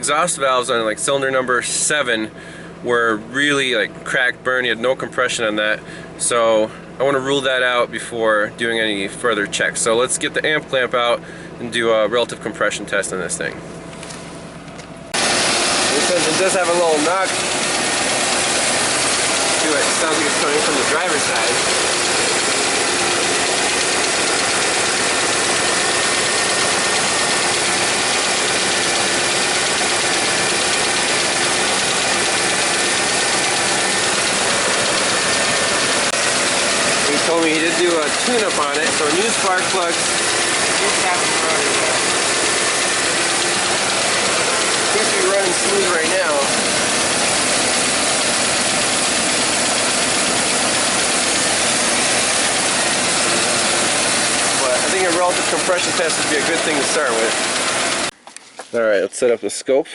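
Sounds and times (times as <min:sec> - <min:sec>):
engine idling with knock: 0:13.6 - 0:58.7.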